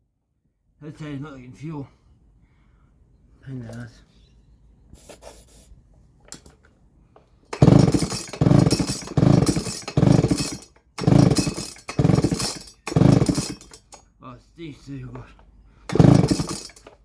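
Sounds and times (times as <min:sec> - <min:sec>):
faint handling noise: 0:03.2 - 0:07.4
chainsaw engine cranking: 0:06.3 - 0:06.6, 0:07.5 - 0:14.1, 0:15.0 - 0:17.0
chainsaw recoil starter pulls: 0:06.3 - 0:06.6, 0:07.5 - 0:14.1, 0:15.1 - 0:17.0.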